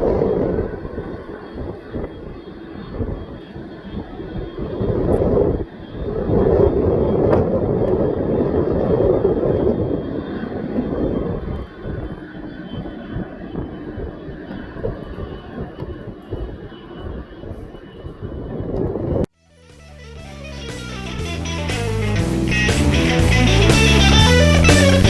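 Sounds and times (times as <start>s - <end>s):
passing plane engine: 0.0s - 19.3s.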